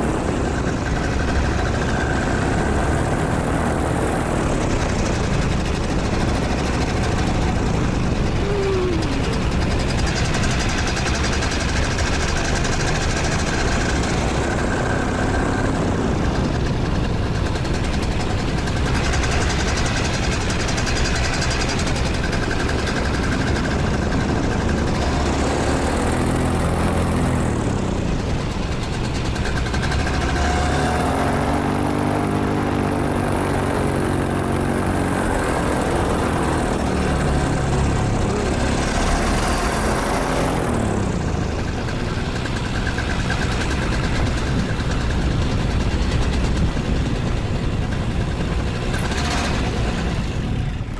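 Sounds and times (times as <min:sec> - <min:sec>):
paramotor engine and propeller: 0:00.0 - 0:50.9
wind rush: 0:00.0 - 0:50.9.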